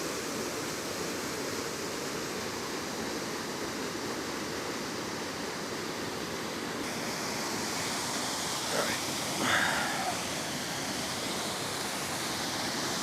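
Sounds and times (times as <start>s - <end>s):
waterfall rushing: 5.0s - 13.0s.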